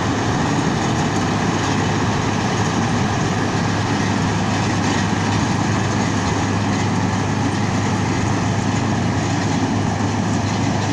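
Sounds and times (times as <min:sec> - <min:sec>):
combine harvester droning: 0:00.0 - 0:10.9.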